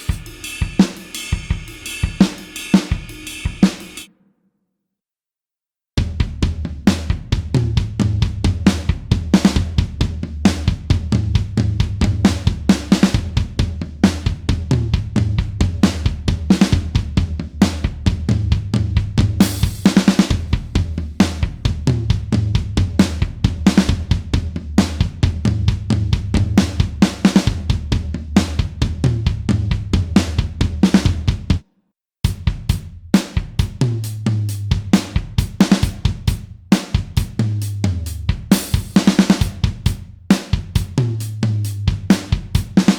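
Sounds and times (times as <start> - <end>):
cymbal crash: 0.0 - 4.1
rock drum beat: 0.0 - 4.1, 6.0 - 31.6, 32.3 - 42.9.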